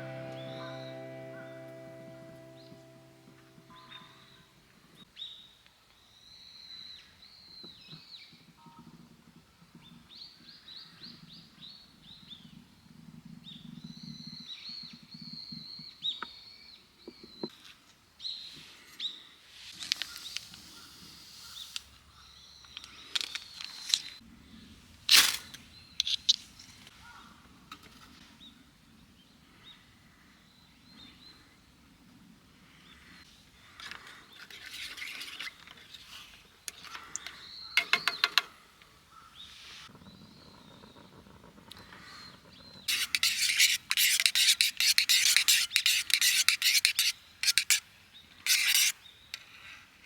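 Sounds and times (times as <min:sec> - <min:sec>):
small birds chirping: 0:39.1 - 0:49.6.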